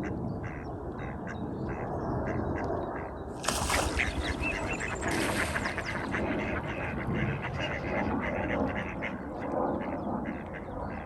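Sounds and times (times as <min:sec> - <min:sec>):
ducks quacking: 0:03.4 - 0:09.2.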